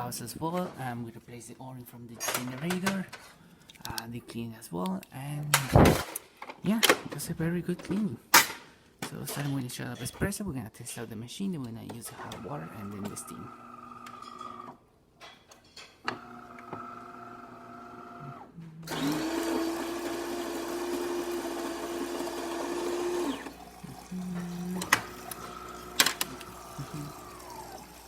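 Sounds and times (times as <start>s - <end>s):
soft motor whine: 16.8s - 28.0s
coffee grinder grinding beans: 18.9s - 28.0s.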